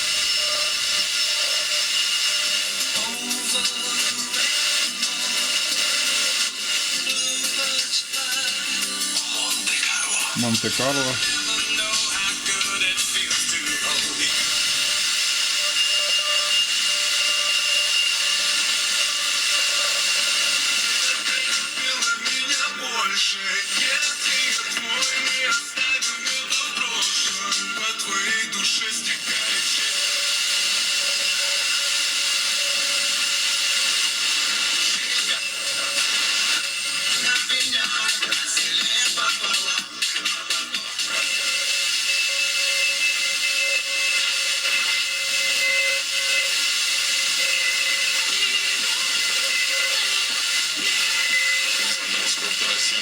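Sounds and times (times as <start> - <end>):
radio static hiss: 0.0 - 2.6, 9.2 - 16.0, 45.6 - 53.0.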